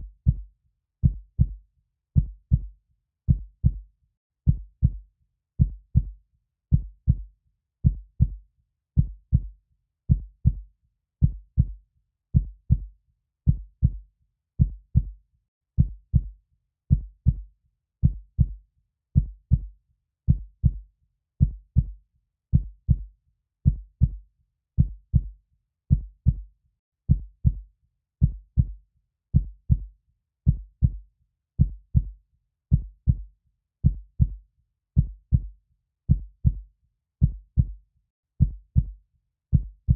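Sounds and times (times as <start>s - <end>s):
heartbeat thumps: 1.0s - 1.6s, 2.2s - 2.7s, 3.3s - 3.8s, 4.5s - 5.0s, 5.6s - 6.1s, 6.7s - 7.2s, 7.8s - 8.4s, 9.0s - 9.5s, 10.1s - 10.6s, 11.2s - 11.8s, 12.4s - 12.9s, 13.5s - 14.0s, 14.6s - 15.1s, 15.8s - 16.3s, 16.9s - 17.4s, 18.0s - 18.6s, 19.2s - 19.7s, 20.3s - 20.8s, 21.4s - 21.9s, 22.5s - 23.0s, 23.7s - 24.2s, 24.8s - 25.3s, 25.9s - 26.4s, 28.2s - 28.8s, 29.4s - 29.9s, 30.5s - 31.0s, 31.6s - 34.4s, 35.0s - 35.5s, 36.1s - 36.6s, 37.2s - 37.8s, 38.4s - 39.9s.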